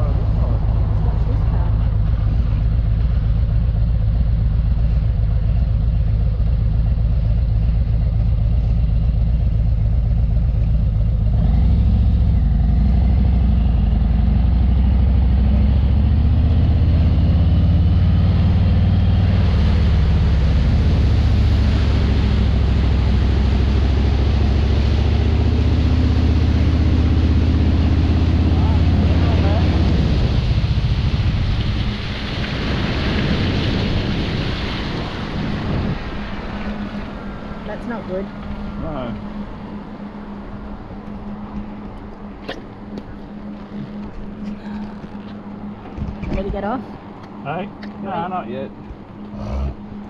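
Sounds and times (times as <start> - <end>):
motorcycle engine running: 0.0 - 32.5.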